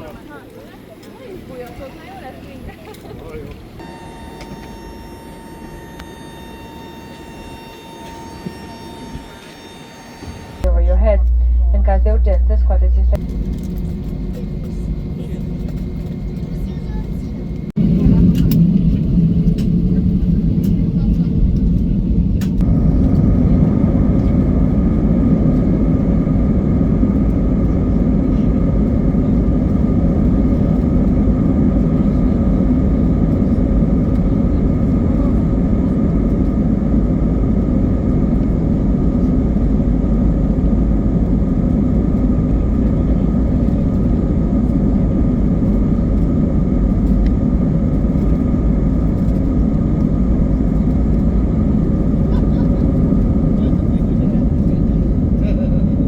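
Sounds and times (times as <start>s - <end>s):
airliner cabin engine drone: 0.0s - 56.0s
faint steady tones: 3.7s - 17.8s.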